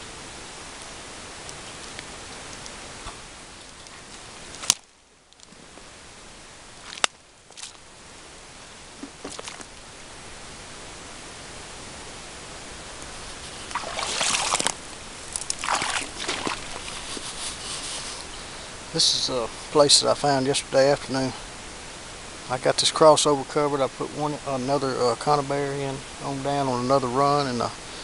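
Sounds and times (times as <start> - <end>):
steady outdoor hiss: 0.0 - 28.0.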